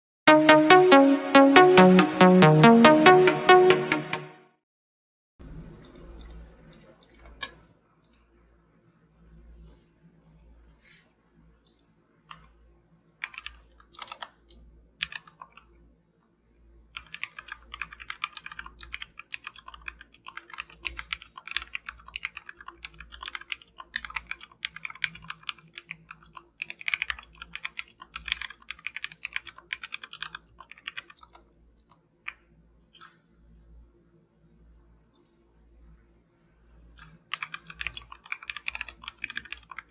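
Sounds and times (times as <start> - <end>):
mechanical keyboard typing: 5.8 - 8.2, 13.2 - 15.7, 17.0 - 32.4, 37.0 - 39.9.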